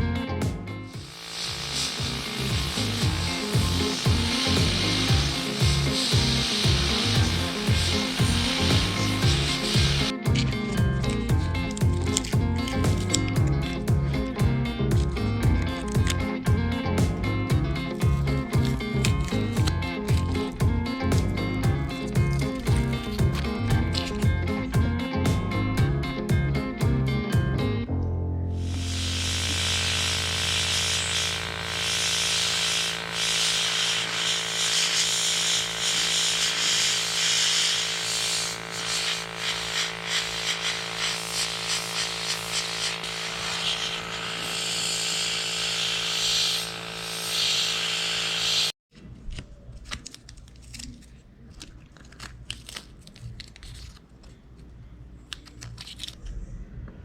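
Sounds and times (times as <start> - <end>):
small motor hissing: 0.9 - 13.9, 28.6 - 48.8
scattered clicks and handling: 10.3 - 13.9.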